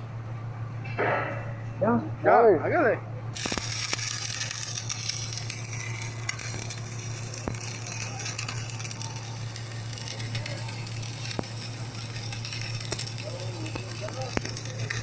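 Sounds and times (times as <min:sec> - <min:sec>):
low hum: 0:00.0 - 0:15.0
welding arc crackling sizzle: 0:03.3 - 0:15.0
sharp spatter pops: 0:03.4 - 0:15.0.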